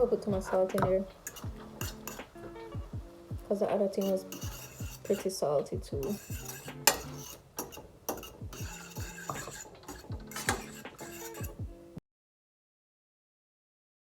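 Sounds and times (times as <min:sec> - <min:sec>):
faint background music: 0:00.0 - 0:12.0
metal utensil scraping cookware: 0:00.6 - 0:02.8, 0:03.7 - 0:11.6.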